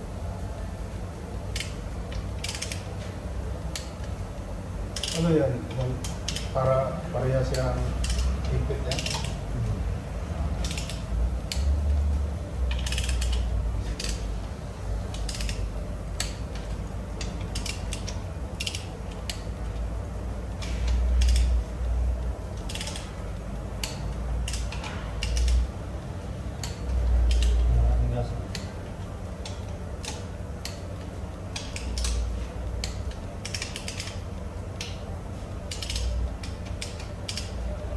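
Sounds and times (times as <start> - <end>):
ratchet wrench clicking: 1.5 - 2.9, 5.0 - 6.7, 7.4 - 9.5, 10.6 - 11.8, 12.7 - 14.3, 15.1 - 19.5, 20.9 - 21.9, 22.6 - 23.1, 23.8 - 25.7, 26.6 - 27.7, 31.5 - 34.2, 35.7 - 37.6.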